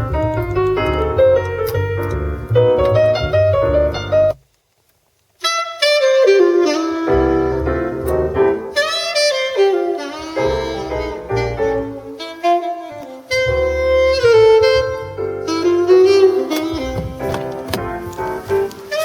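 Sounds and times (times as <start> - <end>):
bass line: 0.0 - 4.4, 7.1 - 8.6, 10.3 - 12.1, 13.4 - 18.5
jazz saxophone melody: 0.0 - 4.4, 5.4 - 19.0.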